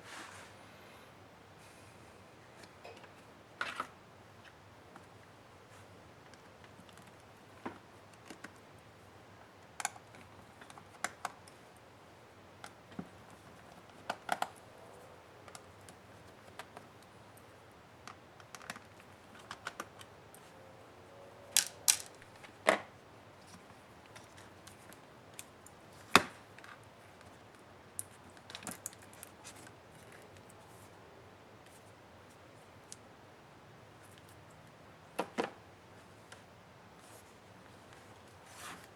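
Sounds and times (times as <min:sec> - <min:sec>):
tools and case parts clicking: 0:21.6 - 0:22.2.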